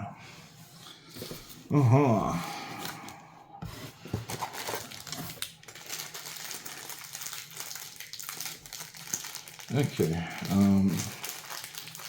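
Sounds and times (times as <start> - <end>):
packaging rustling: 3.6 - 12.0.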